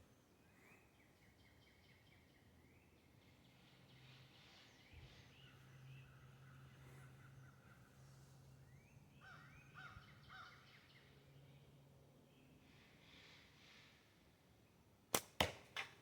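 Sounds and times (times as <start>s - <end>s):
faint bird calls: 9.2s - 11.0s.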